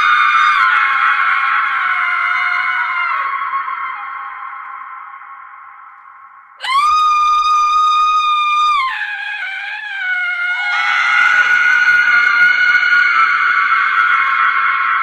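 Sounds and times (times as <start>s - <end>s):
woman screaming: 6.6s - 12.8s.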